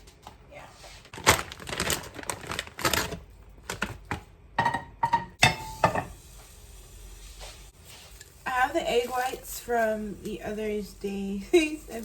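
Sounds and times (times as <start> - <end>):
kitchen items clattering: 1.1 - 6.2.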